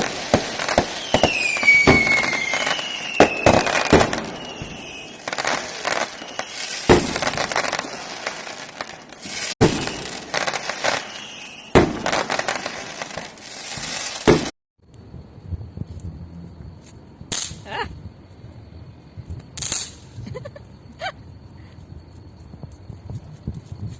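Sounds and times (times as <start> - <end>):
firecrackers crackling: 0.0 - 14.6, 19.4 - 20.4
sharp cracks: 17.3 - 17.7, 19.6 - 20.0.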